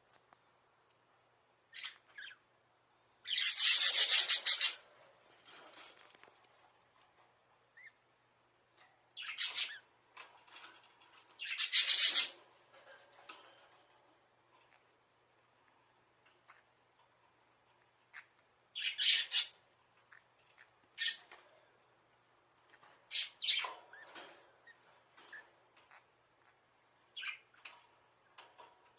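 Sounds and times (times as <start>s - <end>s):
budgerigars harsh raspy calls: 3.3s - 4.8s, 11.4s - 12.4s
faint scratching: 3.5s - 7.9s.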